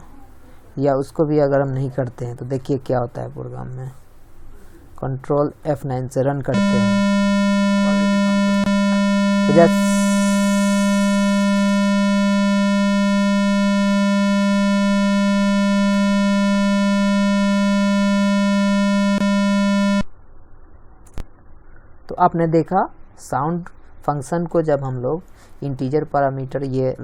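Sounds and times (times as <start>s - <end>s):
buzzy computer beep tone: 6.5s - 20.0s.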